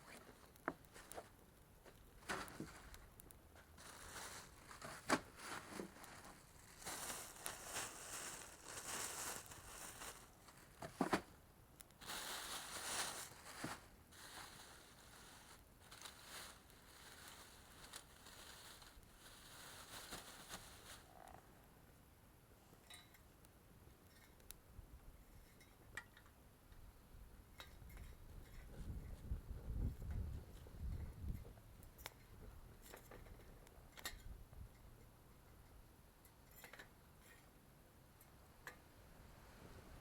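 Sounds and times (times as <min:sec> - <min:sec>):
rustling and crinkling: 0:00.0 - 0:21.4
twig fire crackling and snapping: 0:00.2 - 0:03.7, 0:11.7 - 0:12.1.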